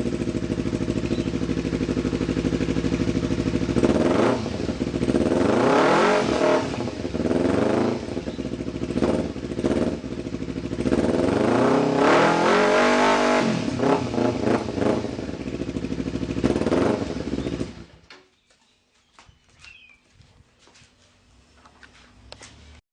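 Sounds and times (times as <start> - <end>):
motorcycle engine revving: 0.0 - 18.1.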